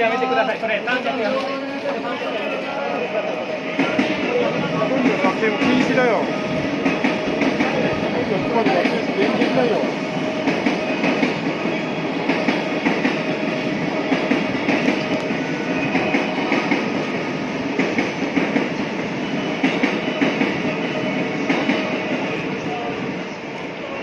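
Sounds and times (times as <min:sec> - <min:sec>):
train wheels clacking: 0:03.0 - 0:23.0.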